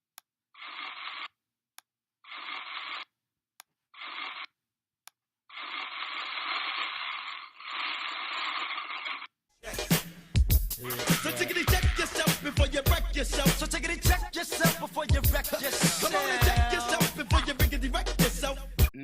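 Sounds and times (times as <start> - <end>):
scratchy paintbrush strokes: 0.6 - 1.3, 2.2 - 3.1, 3.9 - 4.5, 5.5 - 9.3.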